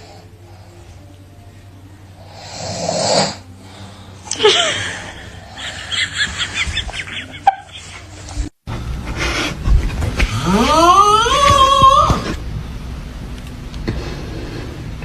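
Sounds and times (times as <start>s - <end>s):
man snoring: 2.2s - 3.6s
stifled laughs: 4.3s - 8.2s.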